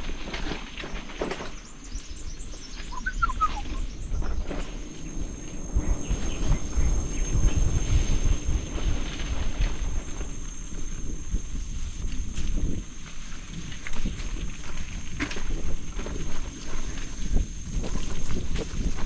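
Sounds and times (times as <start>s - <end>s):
wind rumble on microphone: 0.0s - 19.0s
birds calling: 0.9s - 7.7s.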